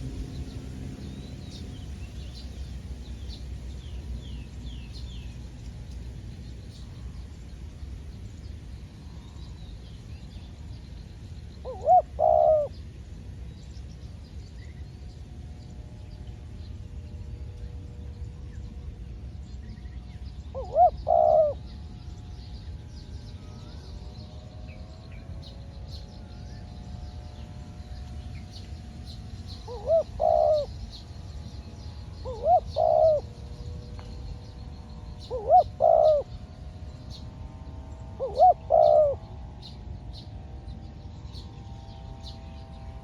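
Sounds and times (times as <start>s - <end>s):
low steady rumble: 0.0s - 43.0s
small birds chirping: 0.0s - 43.0s
dove cooing: 11.6s - 12.7s, 20.5s - 21.8s, 29.6s - 31.0s, 32.2s - 33.4s, 35.2s - 36.5s, 38.2s - 39.2s.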